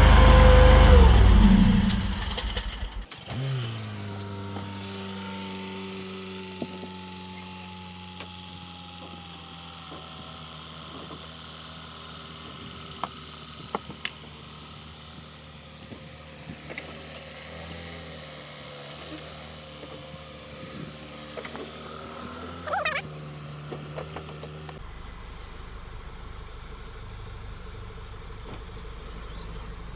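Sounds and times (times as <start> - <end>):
car engine idling: 0.0 - 3.2, 24.4 - 29.9.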